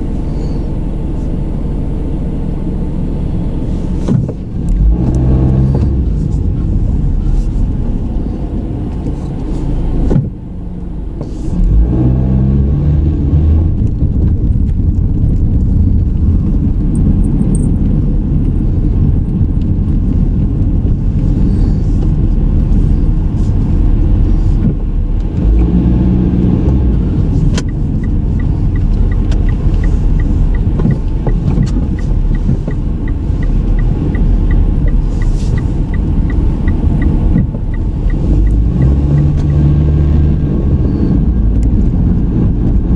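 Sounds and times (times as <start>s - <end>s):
car engine and road rumble: 0.0s - 42.9s
light regular ticking: 16.8s - 40.1s.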